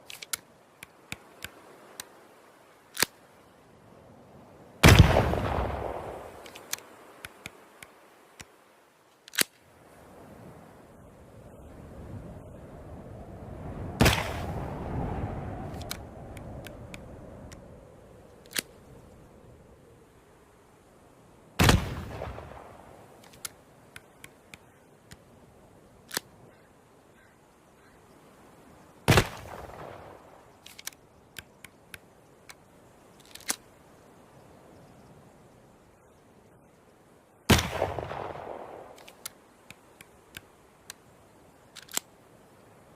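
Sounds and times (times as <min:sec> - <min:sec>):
rumble after shots: 0:04.8 - 0:06.6, 0:37.5 - 0:39.2
sharp clicks: 0:09.2 - 0:09.6, 0:18.4 - 0:18.8, 0:23.2 - 0:25.2, 0:30.6 - 0:32.6, 0:33.2 - 0:33.7, 0:38.8 - 0:41.0, 0:41.7 - 0:42.1
pistol shots: 0:37.5 - 0:39.0.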